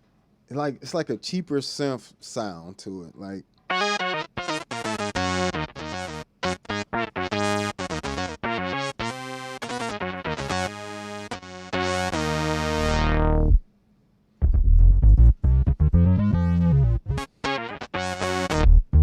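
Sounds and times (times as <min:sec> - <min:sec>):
keyboard synthesizer notes: 0:03.7 - 0:13.6, 0:14.4 - 0:19.0.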